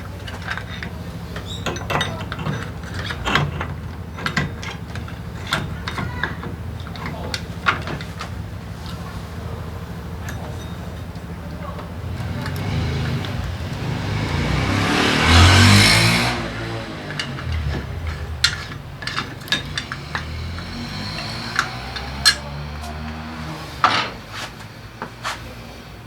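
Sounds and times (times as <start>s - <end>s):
metallic clicks and clinks: 0.0s - 9.1s, 10.1s - 23.2s
vehicle engine running: 0.0s - 26.0s.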